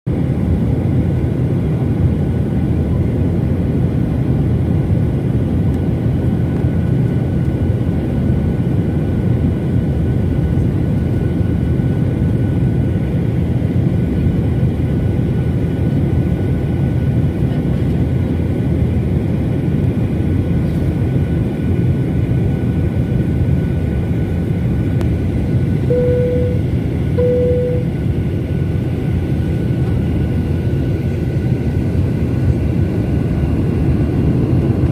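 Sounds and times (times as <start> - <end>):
jet engine cabin noise: 0.1 - 34.9
faint constant whine: 25.8 - 28.8.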